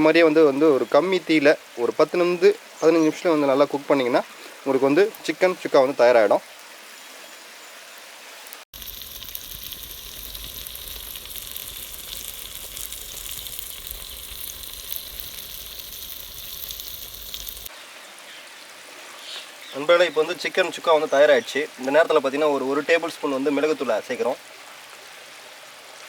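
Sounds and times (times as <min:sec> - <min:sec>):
meat frying in oil: 0:08.4 - 0:17.7.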